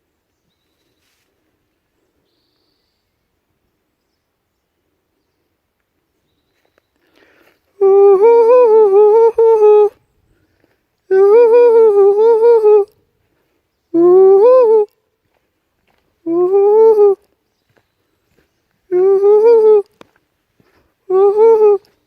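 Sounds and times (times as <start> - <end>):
person humming loudly: 7.8 - 10.0, 11.1 - 13.0, 14.0 - 15.0, 16.2 - 17.2, 18.9 - 19.9, 21.1 - 22.0.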